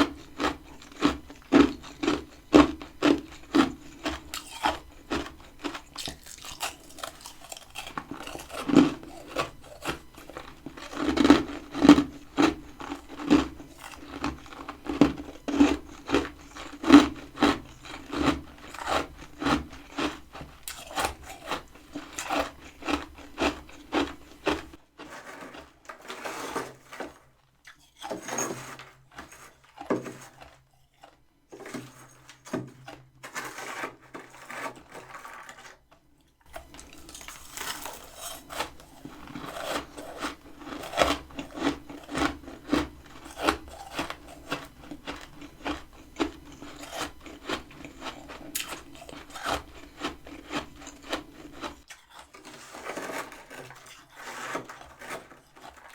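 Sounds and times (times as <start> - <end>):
crunching and scraping of frost: 0.0 - 35.8, 36.5 - 55.9.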